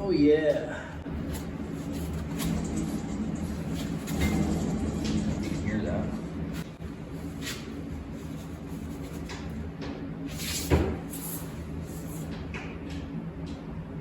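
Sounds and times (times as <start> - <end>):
wheel bearing drone: 1.0 - 6.8.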